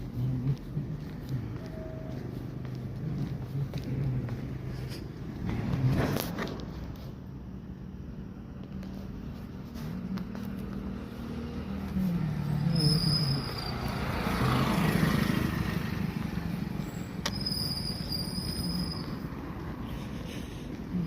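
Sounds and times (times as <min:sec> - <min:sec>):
vehicle engine rushing past: 0:09.3 - 0:20.6.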